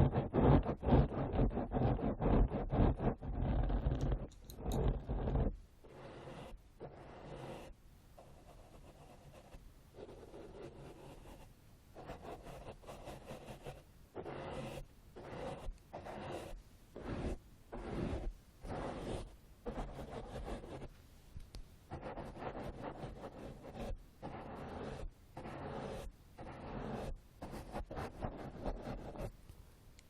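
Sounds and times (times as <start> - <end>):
tool scratching microphone: 0.0 - 21.0, 21.9 - 29.4.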